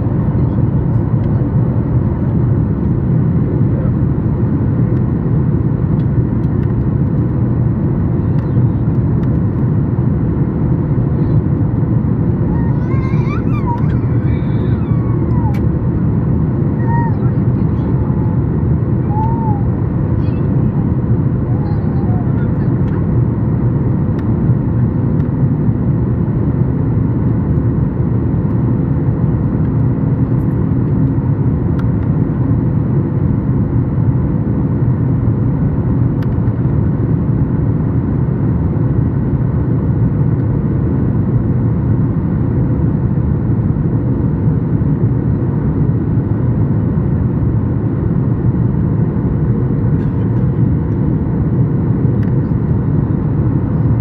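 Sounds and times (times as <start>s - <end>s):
jet engine drone in cabin: 0.0s - 54.0s.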